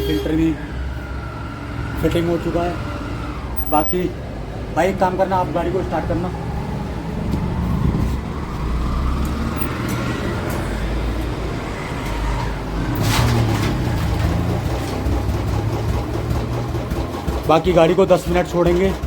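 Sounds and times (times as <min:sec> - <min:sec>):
motorcycle engine running: 0:14.3 - 0:19.0.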